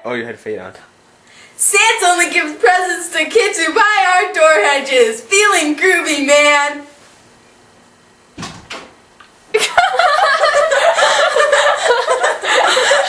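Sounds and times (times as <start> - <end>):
short thumps: 8.4 - 9.0
people laughing: 9.6 - 13.0.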